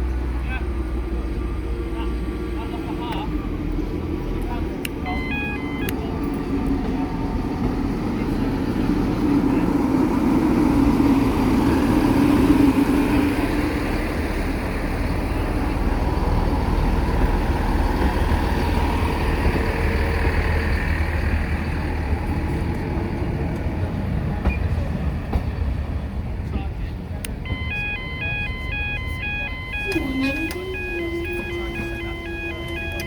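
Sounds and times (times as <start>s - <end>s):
vehicle engine rumble: 0.0s - 33.0s.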